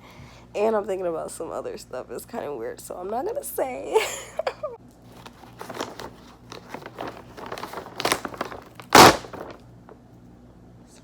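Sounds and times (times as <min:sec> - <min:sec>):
crinkling and small clicks: 0:04.9 - 0:09.6
loud crackle: 0:06.6 - 0:09.6.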